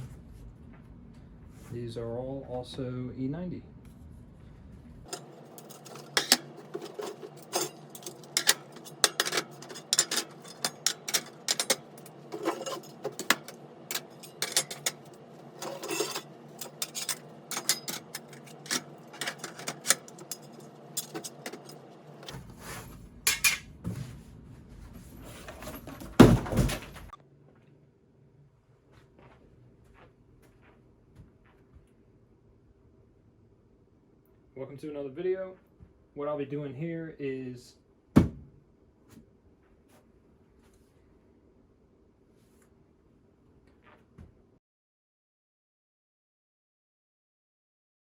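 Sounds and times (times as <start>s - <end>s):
plastic speaker units clattering: 5.1s - 22.4s.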